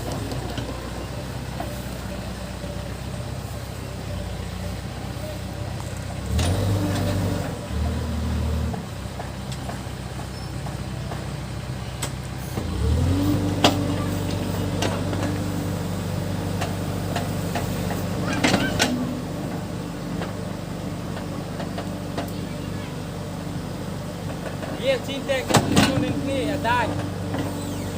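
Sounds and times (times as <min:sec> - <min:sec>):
diesel engine revving: 0:00.0 - 0:27.9
sharp knocks and clanks: 0:24.3 - 0:27.6.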